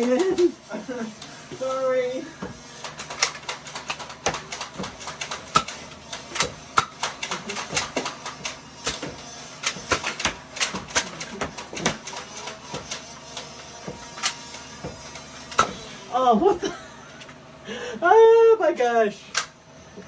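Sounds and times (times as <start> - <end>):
darts striking: 2.4 - 13.0, 14.8 - 15.9
foam dart blasters firing: 2.5 - 16.0.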